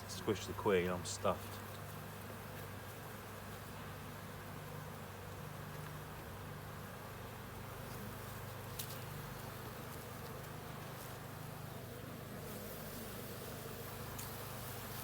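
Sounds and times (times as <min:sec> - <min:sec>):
honey bees buzzing: 0:00.0 - 0:15.0.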